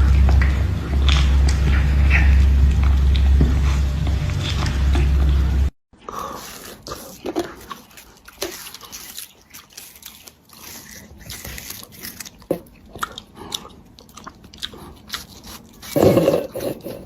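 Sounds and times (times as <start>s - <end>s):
crisp chewing crunches: 0.0s - 17.0s.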